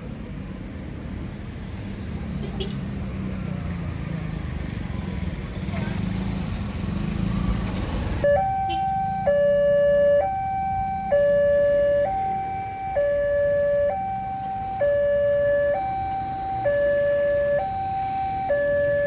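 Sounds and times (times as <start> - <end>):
two-tone crossing alarm: 8.2 - 19.0.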